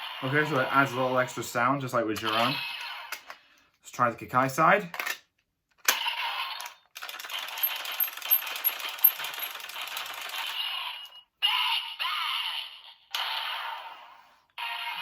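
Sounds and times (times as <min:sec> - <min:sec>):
toy gear rattling clicks: 0:04.9 - 0:11.2
toy electronic sound effects: 0:10.3 - 0:15.0.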